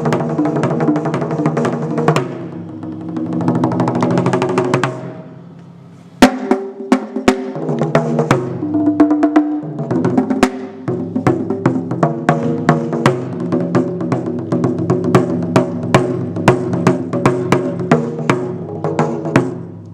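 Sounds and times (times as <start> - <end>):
taiko drums beating: 0.0 - 5.6, 6.2 - 19.9.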